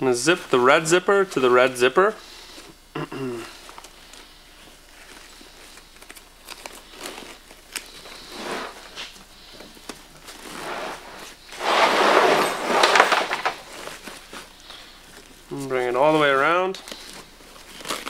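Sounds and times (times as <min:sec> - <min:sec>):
fabric rustling: 0:10.2 - 0:15.4
backpack zipper pulled: 0:10.4 - 0:13.4.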